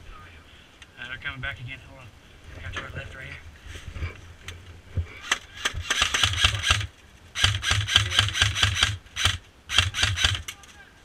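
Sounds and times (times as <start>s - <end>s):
airsoft gun firing bursts: 5.6s - 10.5s.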